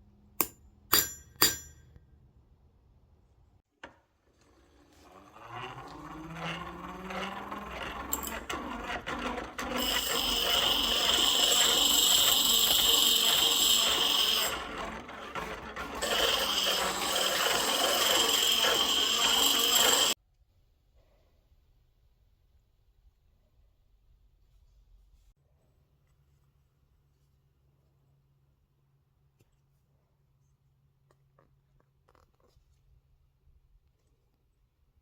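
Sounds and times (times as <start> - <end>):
power tool whining: 4.4 - 20.2.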